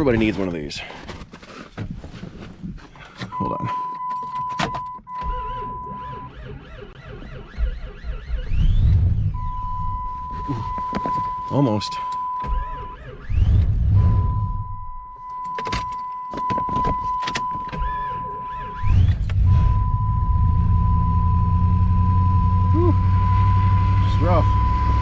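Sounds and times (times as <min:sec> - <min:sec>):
car engine starting and idling roughly: 0:05.1 - 0:11.0
high warning tone: 0:09.3 - 0:13.2, 0:19.5 - 0:25.0.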